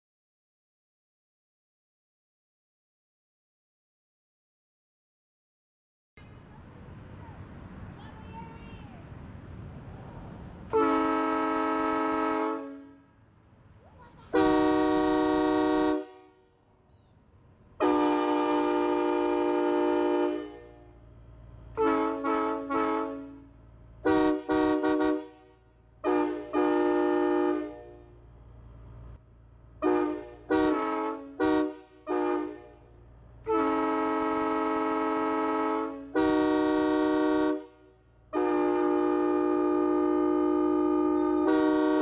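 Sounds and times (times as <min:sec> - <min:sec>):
train horn blasts and toots: 0:10.7 - 0:13.1, 0:14.3 - 0:16.5, 0:17.8 - 0:21.0, 0:21.7 - 0:28.2, 0:29.8 - 0:42.0.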